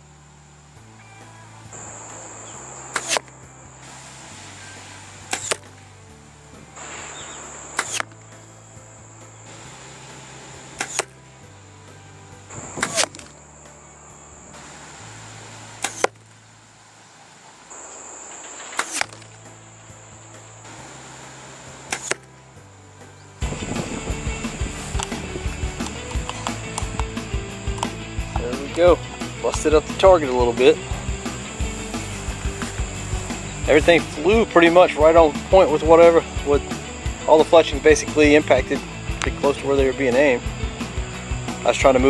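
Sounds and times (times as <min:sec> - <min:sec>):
arrows shot from a bow: 0:02.8 - 0:05.9, 0:06.6 - 0:08.4, 0:10.6 - 0:11.2, 0:12.5 - 0:13.4, 0:14.5 - 0:16.4, 0:18.4 - 0:19.5, 0:21.7 - 0:22.4, 0:23.4 - 0:36.6.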